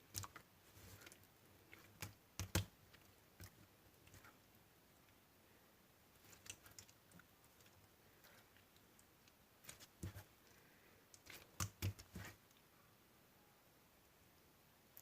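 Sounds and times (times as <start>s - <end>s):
slime clicking and popping: 2.0s - 2.7s, 11.2s - 12.2s.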